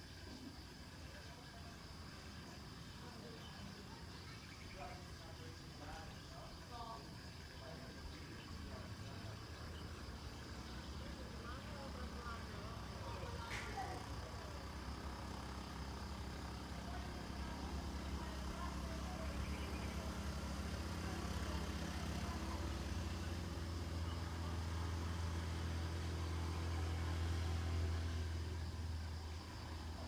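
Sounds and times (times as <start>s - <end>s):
faint voices: 0.3s - 30.0s
low engine hum: 8.6s - 30.0s.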